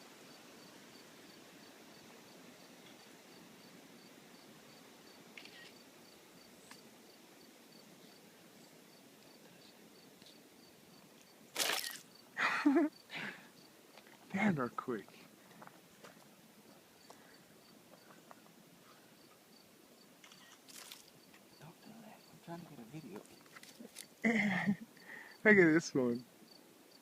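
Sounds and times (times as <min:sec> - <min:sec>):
insect chirping: 0:00.0 - 0:14.4, 0:15.2 - 0:27.0.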